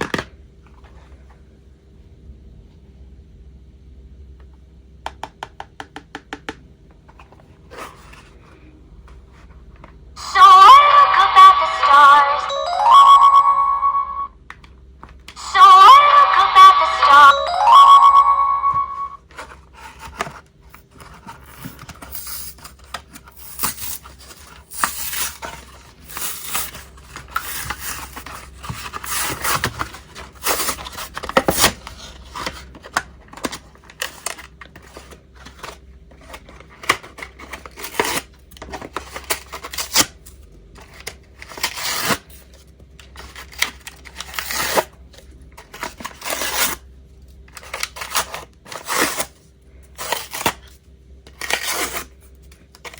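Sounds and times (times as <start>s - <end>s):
packaging scraping: 19.3s - 40.1s, 51.4s - 52.2s.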